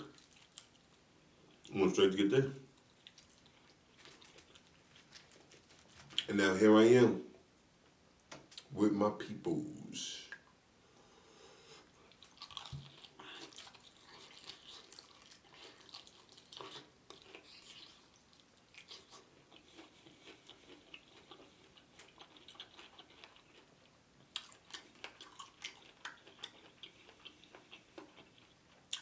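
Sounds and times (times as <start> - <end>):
person chewing crispy chicken: 0.0 - 1.0, 2.8 - 6.3, 12.0 - 29.0.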